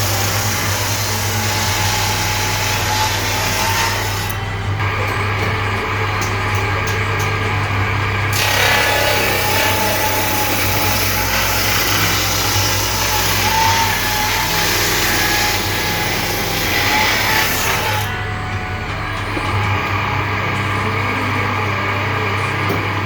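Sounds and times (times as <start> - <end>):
saw cutting wood hiss: 0.0 - 5.0, 8.3 - 18.2
saw motor humming: 0.0 - 23.0.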